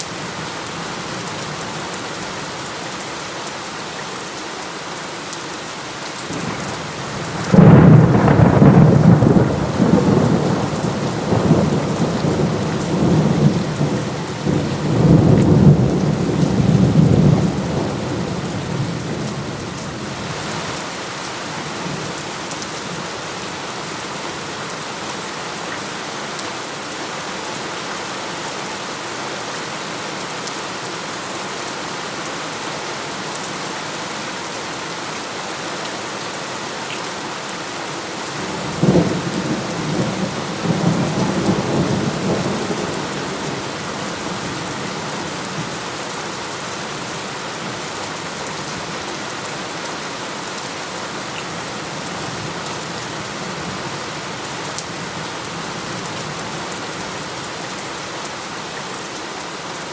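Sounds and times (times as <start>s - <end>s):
heavy rain: 0.0s - 59.9s
thunder rolling: 7.2s - 19.6s.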